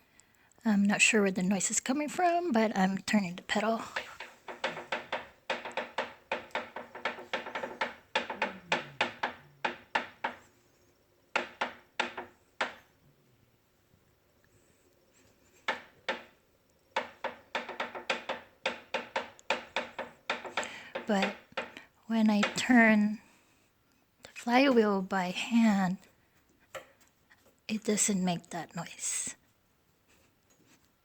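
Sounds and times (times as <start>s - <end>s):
exercise bike pedal clicking: 3.8s - 10.4s, 17.0s - 21.8s.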